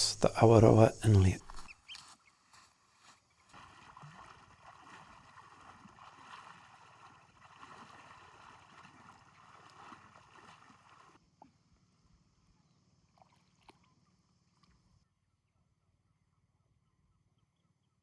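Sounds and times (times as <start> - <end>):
shallow water splashing: 0.0 - 11.2.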